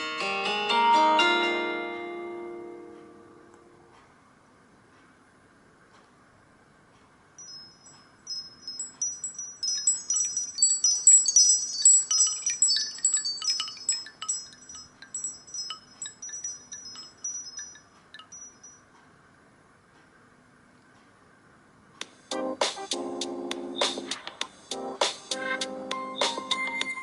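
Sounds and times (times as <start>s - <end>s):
wind-chime ringtone: 7.4s - 18.9s, 25.4s - 27.0s.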